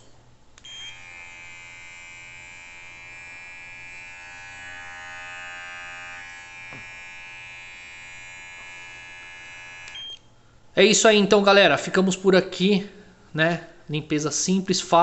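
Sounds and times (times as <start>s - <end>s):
electric pet clipper buzzing: 0.6s - 10.0s.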